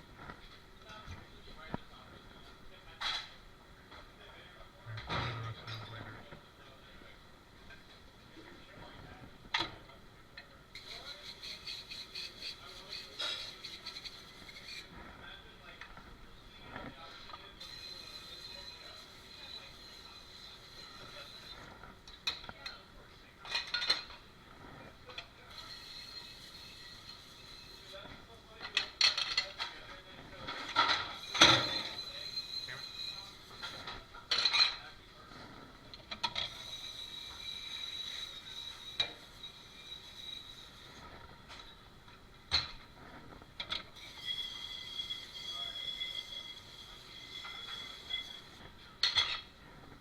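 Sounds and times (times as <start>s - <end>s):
dishes and cutlery clattering: 10.8s - 14.8s, 23.4s - 24.2s, 28.6s - 29.8s, 30.5s - 34.8s, 43.6s - 49.5s
steady high-pitched hum: 43.0s - 48.7s
high-pitched machine whine: 44.0s - 48.6s.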